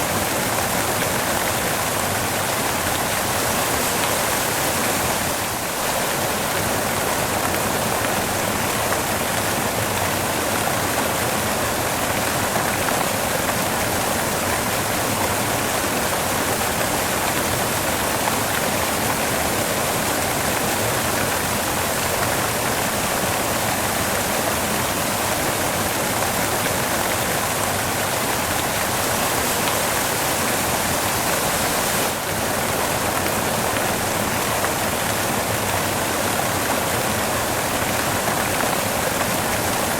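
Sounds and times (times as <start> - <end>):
steady white noise hiss: 0.0 - 39.9.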